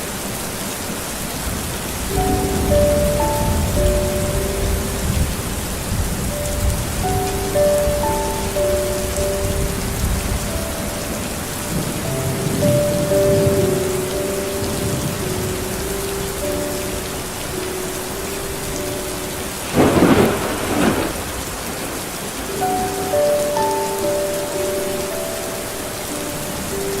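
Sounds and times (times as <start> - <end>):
steady rain: 0.0 - 27.0
soft slow melody: 1.7 - 27.0
low thunder rumbles: 19.6 - 22.3.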